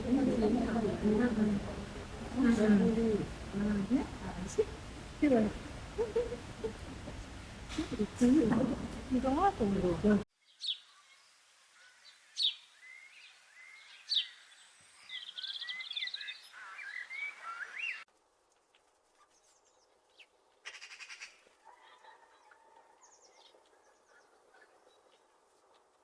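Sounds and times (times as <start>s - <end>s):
birds chirping and whistling: 15.1s - 18.0s.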